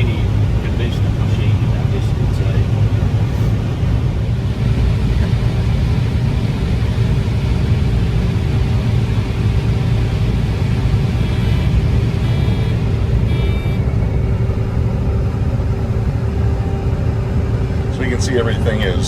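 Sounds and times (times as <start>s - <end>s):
combine harvester rumble: 0.0s - 19.0s
faint steady hum: 8.0s - 19.0s.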